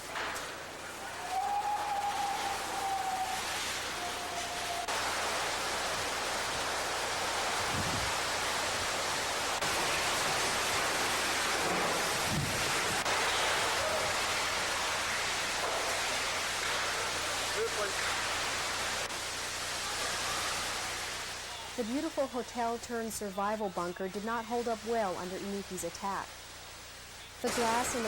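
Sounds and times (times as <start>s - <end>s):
strong wind and rain: 0.0s - 22.9s
low wind gusts buffeting: 7.1s - 9.7s, 12.0s - 13.1s.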